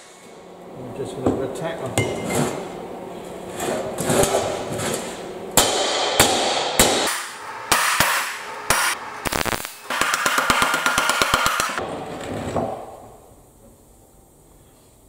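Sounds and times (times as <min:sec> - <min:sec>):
hammer striking steel: 0:05.6 - 0:09.0, 0:09.7 - 0:11.8.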